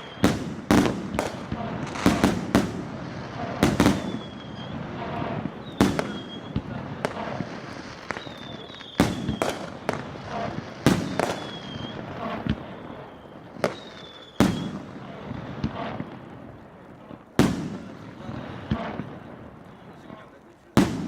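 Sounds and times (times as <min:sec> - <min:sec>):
firework bangs: 0:00.0 - 0:21.0
firework crackle: 0:00.0 - 0:21.0
thin whistling tones: 0:08.1 - 0:09.6, 0:11.1 - 0:12.1, 0:12.8 - 0:14.7.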